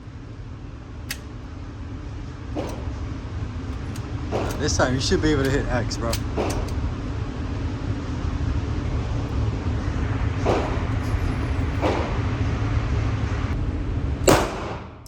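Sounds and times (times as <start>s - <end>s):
steady low rumble: 0.0s - 15.0s
gunshots: 14.3s - 15.0s.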